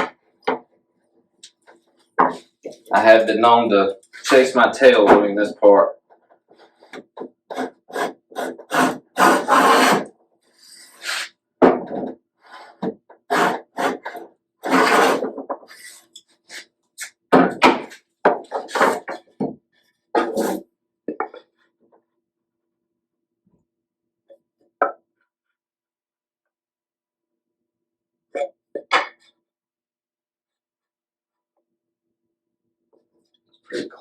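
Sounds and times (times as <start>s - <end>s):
hand plane shaving wood: 7.5s - 10.1s, 13.3s - 16.6s, 18.5s - 19.2s.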